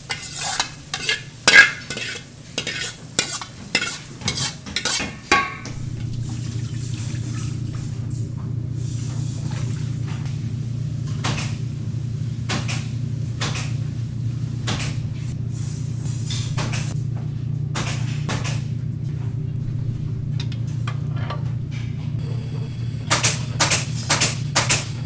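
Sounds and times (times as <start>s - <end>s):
dishes and utensils clinking: 0.0s - 7.6s
steady low hum: 0.0s - 25.0s.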